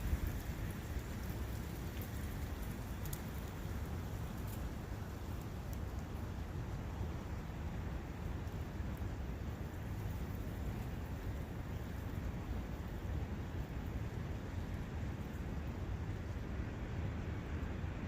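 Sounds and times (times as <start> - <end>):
faint ticks: 0.0 - 6.2
wind: 0.0 - 18.0.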